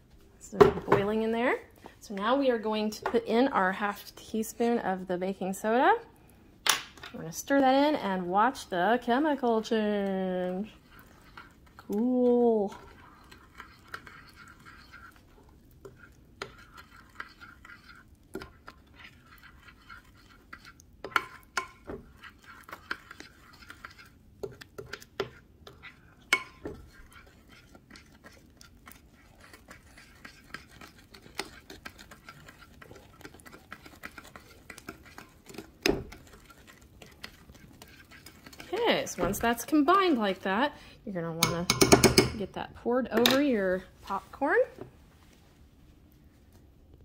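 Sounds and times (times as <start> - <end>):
utensil scraping against bowl: 8.8 - 40.2.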